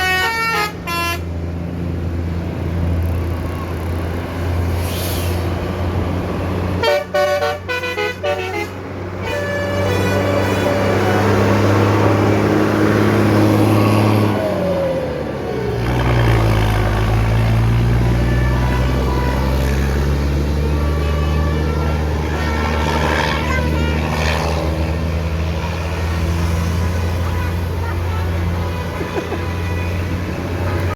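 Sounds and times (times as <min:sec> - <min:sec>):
bus engine drone: 0:00.0 - 0:30.9
musical air horn notes: 0:06.8 - 0:11.3.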